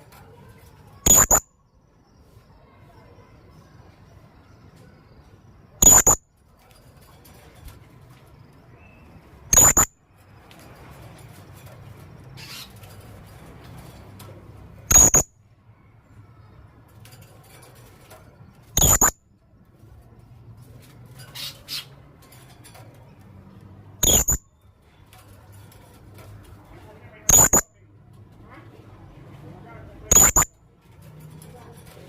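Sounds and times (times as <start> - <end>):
parrot high-pitched calls: 1.0 - 1.4, 5.8 - 6.2, 9.5 - 9.9, 12.4 - 12.8, 14.9 - 15.3, 18.8 - 19.1, 21.3 - 22.0, 24.0 - 24.4, 27.3 - 27.6, 30.1 - 30.5.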